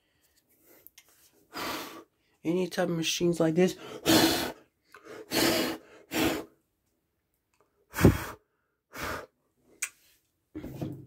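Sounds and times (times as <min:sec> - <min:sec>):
person exhaling breathily: 0:07.9 - 0:09.3.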